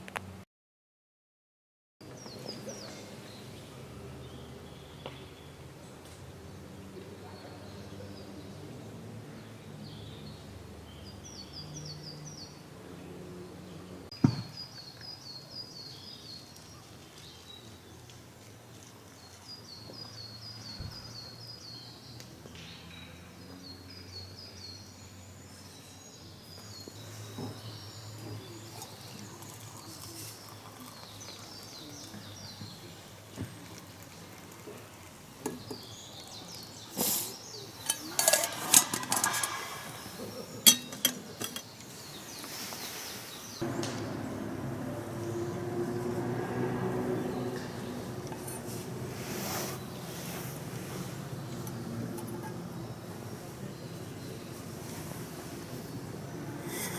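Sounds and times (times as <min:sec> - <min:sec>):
small birds singing: 0:02.0 - 0:46.2, 0:47.0 - 0:56.9
clinks: 0:37.8 - 0:39.9, 0:40.7 - 0:41.8, 0:47.6 - 0:48.8.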